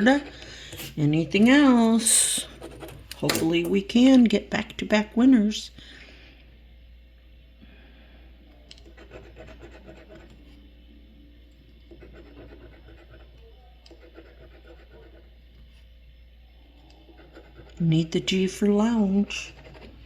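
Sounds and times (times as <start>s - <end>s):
scratching a lottery ticket: 1.9s - 3.1s, 8.8s - 10.5s, 11.9s - 15.4s, 16.9s - 20.0s.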